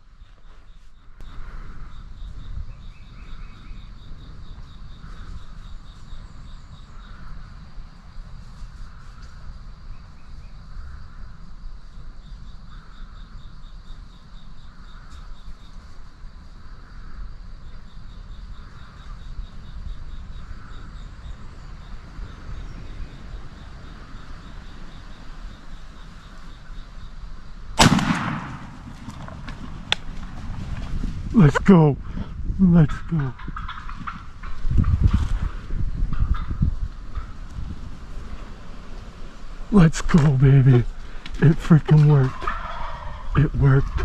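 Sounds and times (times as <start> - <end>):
low wind rumble: 0.0 - 44.0.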